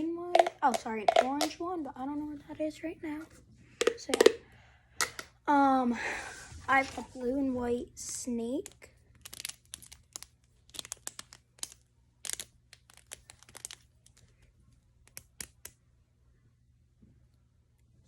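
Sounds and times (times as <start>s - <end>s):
plastic fidget toy clicks: 0.3s - 1.5s, 3.8s - 4.4s, 8.6s - 13.8s.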